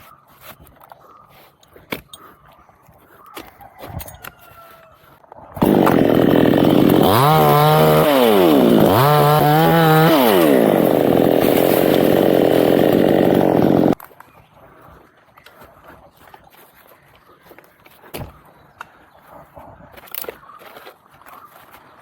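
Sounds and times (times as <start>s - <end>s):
chainsaw running: 5.6s - 14.0s.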